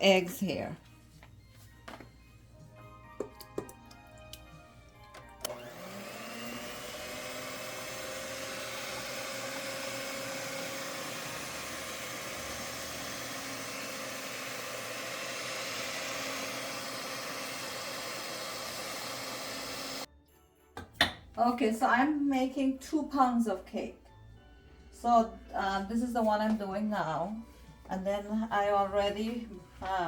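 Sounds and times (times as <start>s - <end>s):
electric mixer running: 5.1s - 20.1s.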